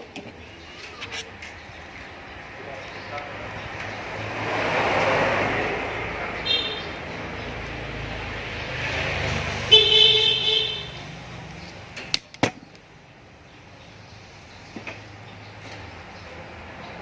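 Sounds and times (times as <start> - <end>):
traffic rumble: 0.0 - 17.0
vehicle horn tooting: 6.4 - 7.0, 9.7 - 11.0.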